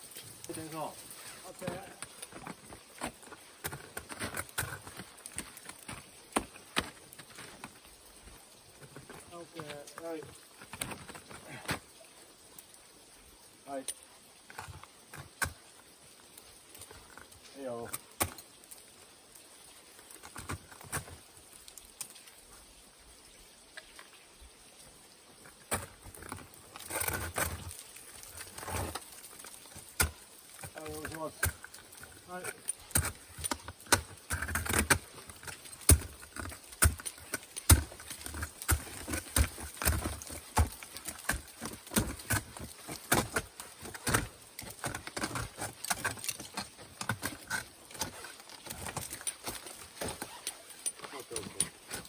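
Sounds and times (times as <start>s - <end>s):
crampons scraping ice: 0.1s - 7.9s, 8.7s - 11.9s, 25.5s - 52.0s.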